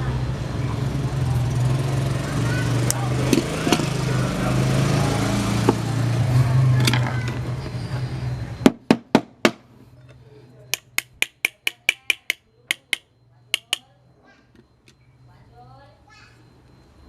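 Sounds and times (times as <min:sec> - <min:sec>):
sharp hammer taps: 0:10.7 - 0:13.9.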